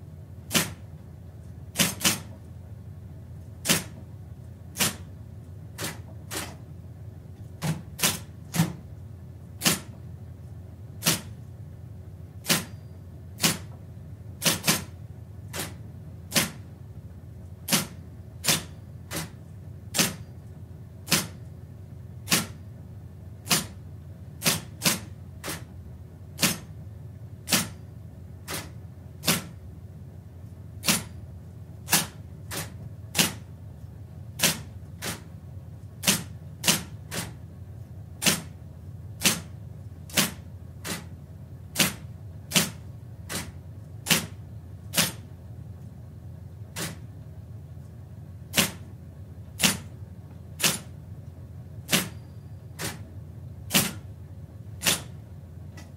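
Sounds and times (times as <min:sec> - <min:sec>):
steady low hum: 0:00.0 - 0:55.9
typewriter key clacks: 0:46.8 - 0:47.0.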